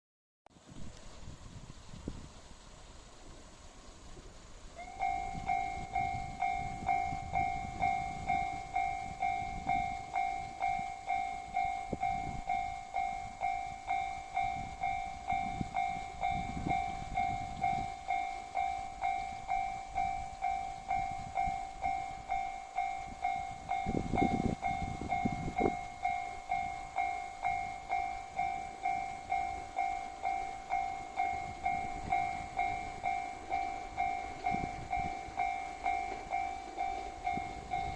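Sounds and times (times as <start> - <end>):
level-crossing alarm ringing: 4.8 - 37.9.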